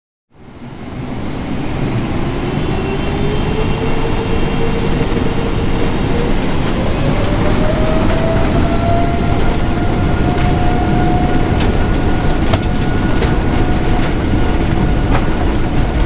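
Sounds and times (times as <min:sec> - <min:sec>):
rising jet engine whine: 0:00.3 - 0:16.0
jet engines rumbling: 0:00.4 - 0:16.0.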